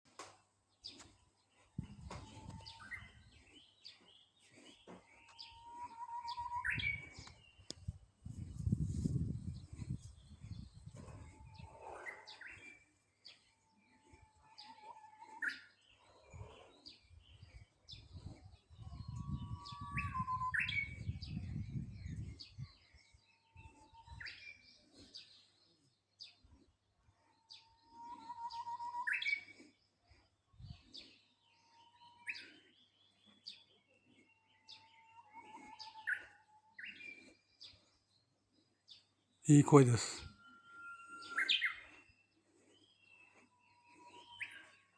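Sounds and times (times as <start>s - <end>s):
warbler singing whistled song: 0.8s - 26.4s, 27.3s - 39.4s, 40.2s - 44.9s
wind rumble on microphone: 1.8s - 3.4s, 6.7s - 11.8s, 17.2s - 24.3s
small birds chirping faintly: 22.1s - 44.9s.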